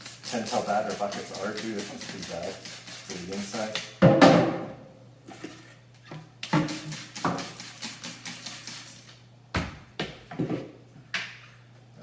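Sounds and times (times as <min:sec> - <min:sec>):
spray bottle squirting: 0:00.0 - 0:03.9, 0:06.4 - 0:09.2.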